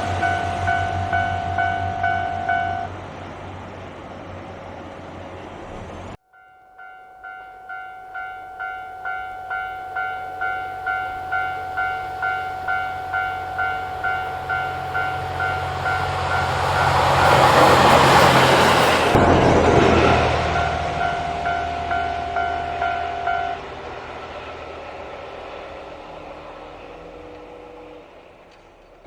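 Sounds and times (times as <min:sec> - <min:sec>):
level-crossing warning bell ringing: 0:00.0 - 0:03.0, 0:06.2 - 0:24.3
diesel train rushing past: 0:00.0 - 0:06.2, 0:07.2 - 0:29.0.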